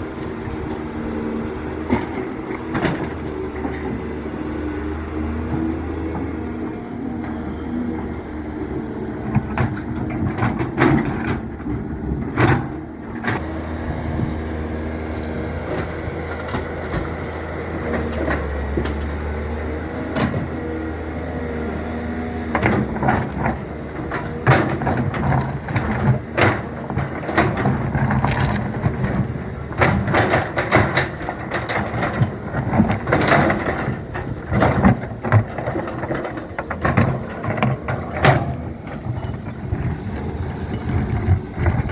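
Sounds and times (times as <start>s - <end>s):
excavator engine running: 0.0s - 41.9s
machine clanks and knocks: 9.2s - 13.5s, 21.9s - 41.9s.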